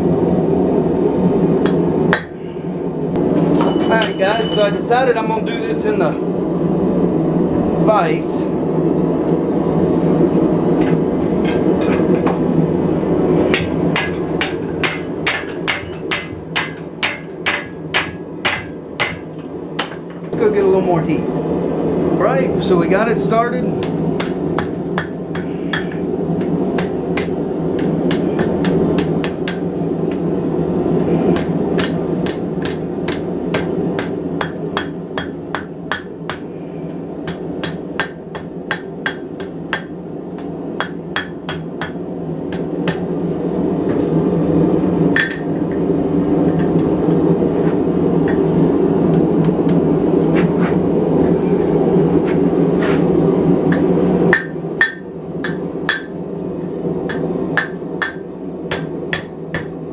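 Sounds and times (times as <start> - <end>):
hammer striking steel on anvil: 1.6 - 2.4, 3.5 - 4.8, 13.5 - 20.1, 23.8 - 30.2, 31.4 - 36.5, 37.2 - 43.5, 45.2 - 45.9, 53.7 - 59.9.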